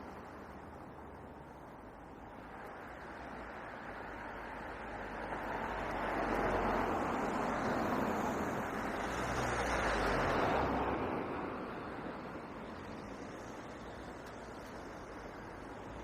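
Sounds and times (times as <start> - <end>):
vehicle passing close by: 5.2 - 11.8.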